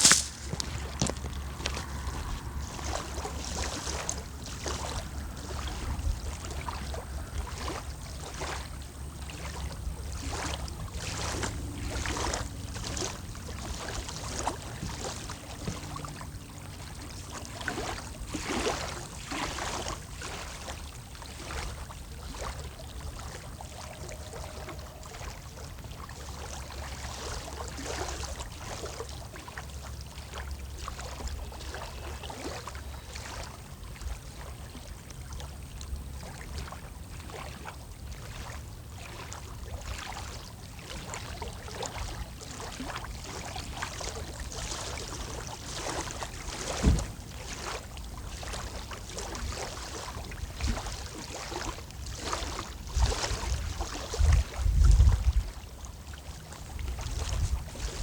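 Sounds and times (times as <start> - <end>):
water lapping at shore: 0.0 - 58.0
wind buffeting microphone: 52.9 - 55.6, 56.8 - 58.0.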